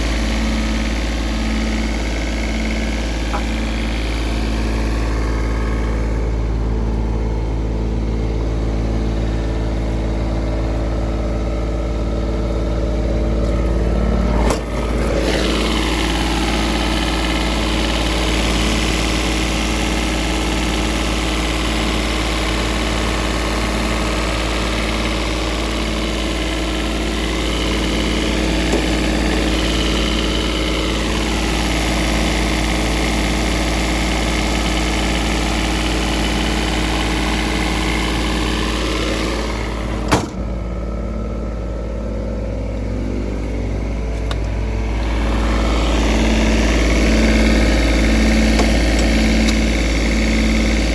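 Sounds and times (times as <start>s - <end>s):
diesel generator running: 0.0s - 50.9s.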